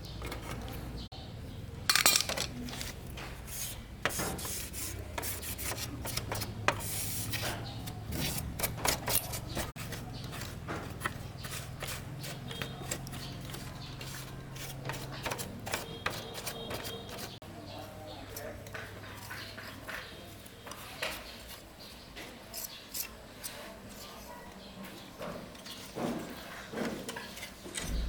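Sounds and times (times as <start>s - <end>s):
steady low hum: 27.8s - 28.0s.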